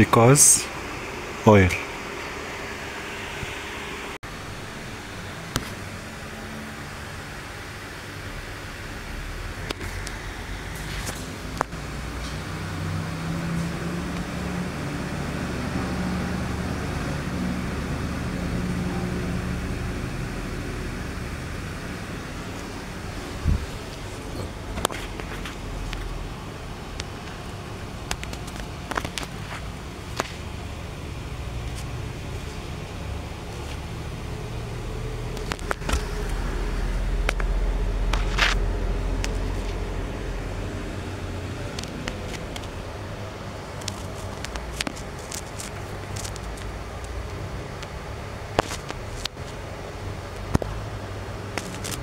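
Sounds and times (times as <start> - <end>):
car engine idling: 0.1 - 52.0.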